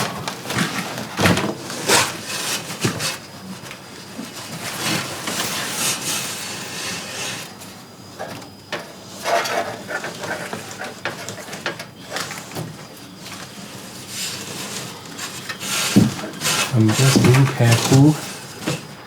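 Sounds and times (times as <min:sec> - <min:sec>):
cardboard rustling: 0:16.0 - 0:18.2.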